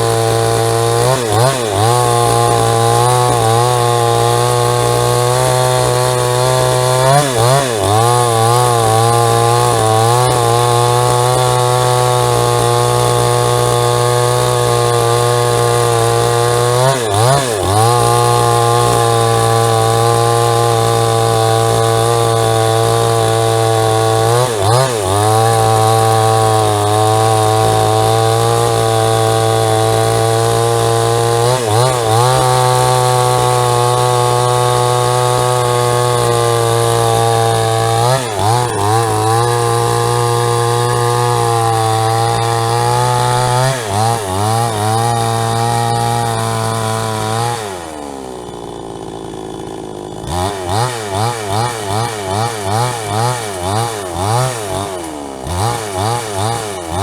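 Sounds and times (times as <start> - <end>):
chainsaw sawing a log: 0.0 - 57.0.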